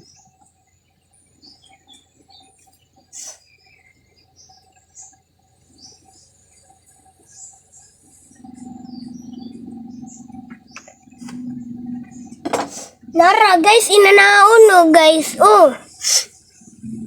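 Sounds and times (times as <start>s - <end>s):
bird chirps: 0.0s - 13.2s
faint pulsing insect-like tone: 0.0s - 17.0s
insect calls: 0.0s - 17.0s
low steady hum: 5.4s - 17.0s.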